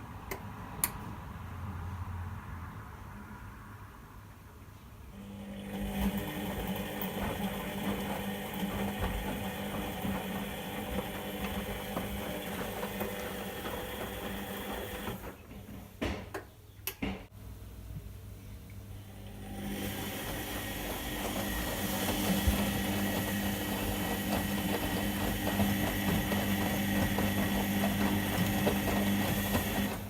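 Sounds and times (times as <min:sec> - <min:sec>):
washing machine motor whine: 0:05.2 - 0:15.4, 0:18.9 - 0:30.0.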